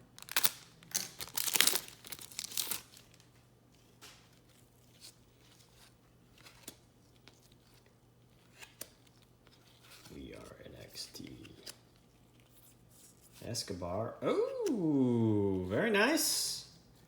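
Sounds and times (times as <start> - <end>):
wrapper tearing and crinkling: 0.1 - 3.3.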